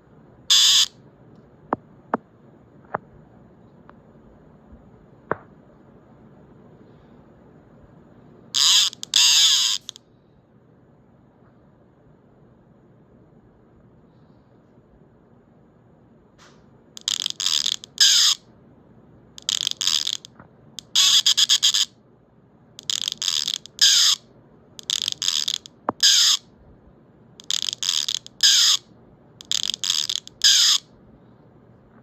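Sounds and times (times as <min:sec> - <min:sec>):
high-pitched electronic chirping: 0:00.5 - 0:00.9, 0:08.6 - 0:10.0, 0:17.0 - 0:18.4, 0:19.4 - 0:21.9, 0:22.8 - 0:24.2, 0:24.8 - 0:26.4, 0:27.4 - 0:28.8, 0:29.4 - 0:30.8.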